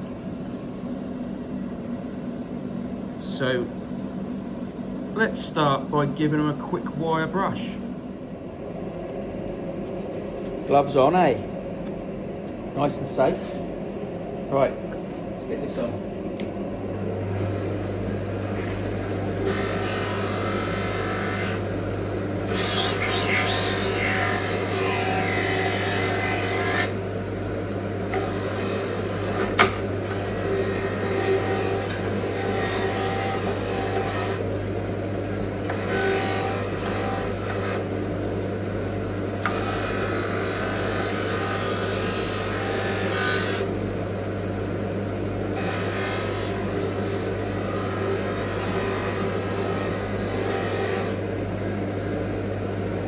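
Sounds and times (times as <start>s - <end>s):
steady low hum: 0.0s - 25.4s.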